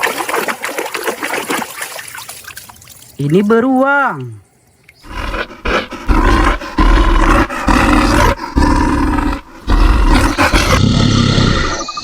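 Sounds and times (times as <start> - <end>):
bear roaring: 5.0 - 11.8.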